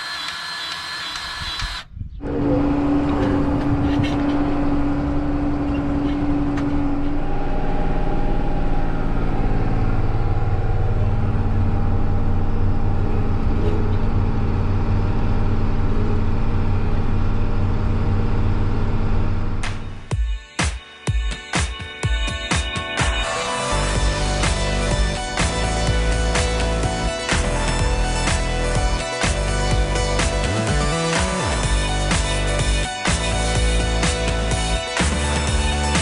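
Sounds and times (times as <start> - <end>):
steady whine: 0.0 - 20.1, 23.2 - 36.0
tractor engine running: 0.0 - 20.1, 23.7 - 36.0
music with sharp beat: 19.6 - 36.0.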